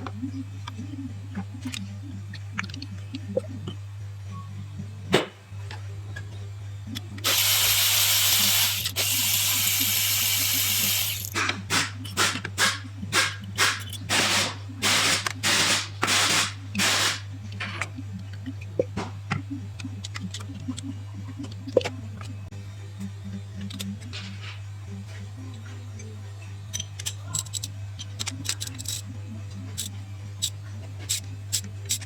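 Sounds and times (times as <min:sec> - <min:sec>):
compressed air hissing: 0:07.2 - 0:11.4.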